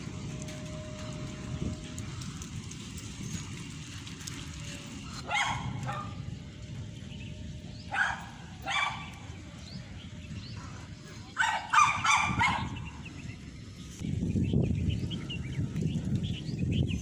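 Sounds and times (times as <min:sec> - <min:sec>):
low rumbling noise: 0:00.0 - 0:17.0
dog barking: 0:05.2 - 0:06.2, 0:07.9 - 0:09.2, 0:11.4 - 0:12.8.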